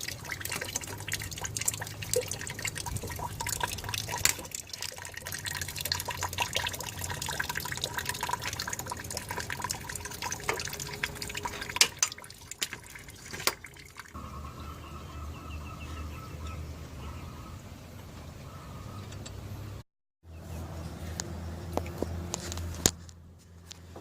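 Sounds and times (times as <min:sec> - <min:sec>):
liquid dripping and trickling: 0:00.0 - 0:14.2.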